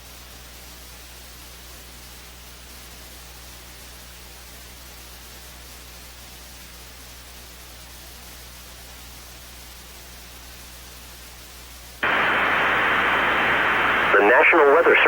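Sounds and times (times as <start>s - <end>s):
low even hum: 12.0s - 15.0s
static hiss: 12.0s - 15.0s.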